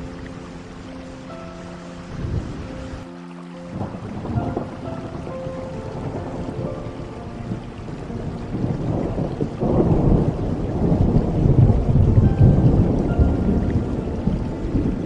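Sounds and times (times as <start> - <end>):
rain falling: 0.0 - 15.0
deep thunder rumbling: 3.7 - 15.0.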